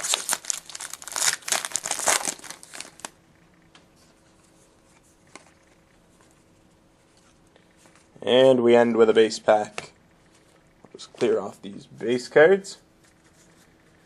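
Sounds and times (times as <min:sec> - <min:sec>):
card pack wrapper tearing: 0:00.0 - 0:03.1
faint steady hum: 0:00.0 - 0:14.0.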